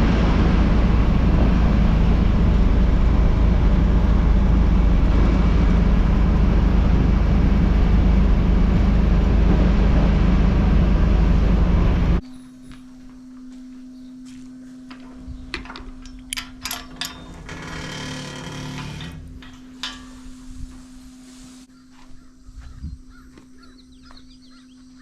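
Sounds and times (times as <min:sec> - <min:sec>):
steady low hum: 0:00.0 - 0:25.0
birds chirping: 0:21.5 - 0:25.0.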